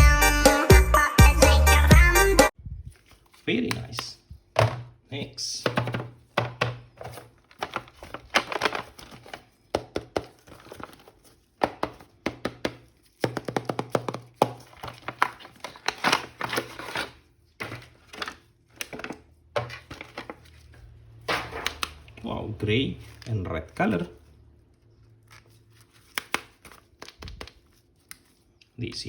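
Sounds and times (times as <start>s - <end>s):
plastic packaging crinkling and tearing: 2.9s - 4.0s, 7.0s - 9.6s, 14.6s - 20.7s, 24.2s - 28.6s.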